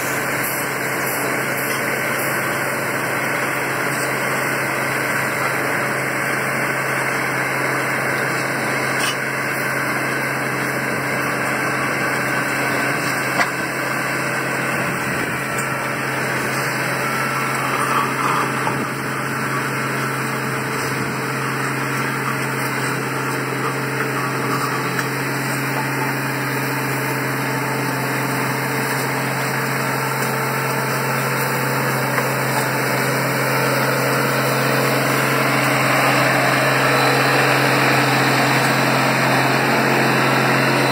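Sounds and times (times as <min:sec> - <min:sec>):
machinery engine humming: 0:00.0 - 0:40.9.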